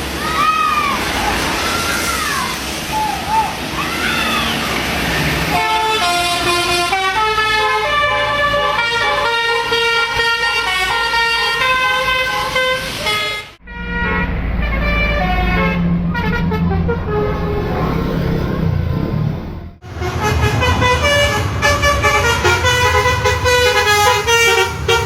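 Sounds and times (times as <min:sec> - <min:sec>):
bus horns playing melody: 0:05.4 - 0:18.0, 0:19.8 - 0:25.0
low engine rumble: 0:13.6 - 0:25.0.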